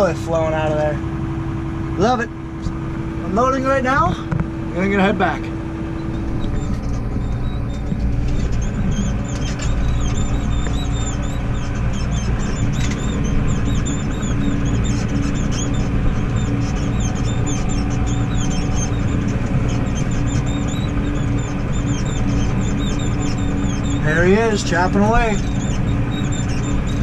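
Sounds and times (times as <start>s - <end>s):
tractor engine running: 0.0s - 27.0s
light rattles: 5.4s - 27.0s.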